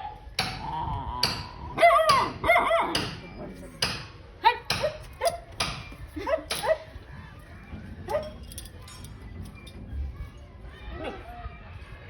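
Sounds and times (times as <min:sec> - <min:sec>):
dog barking: 0:01.8 - 0:03.1.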